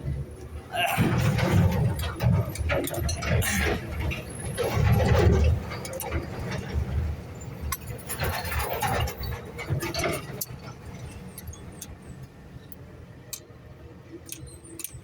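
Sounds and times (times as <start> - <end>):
hand tools clicking on metal: 0.4 - 6.8, 7.7 - 13.5, 14.2 - 15.0.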